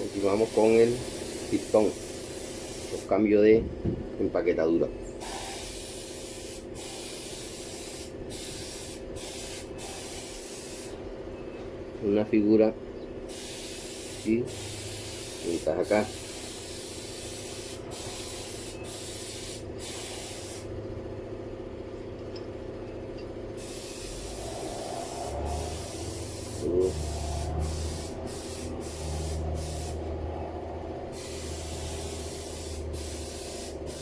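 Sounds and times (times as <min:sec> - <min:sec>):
steady hissing noise: 0:00.0 - 0:03.3, 0:05.2 - 0:11.0, 0:13.3 - 0:20.7, 0:23.6 - 0:34.0.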